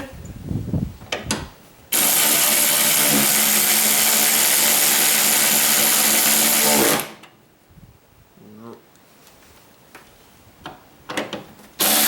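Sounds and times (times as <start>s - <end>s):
electric ratchet motor whining: 1.9s - 7.2s, 11.8s - 12.0s.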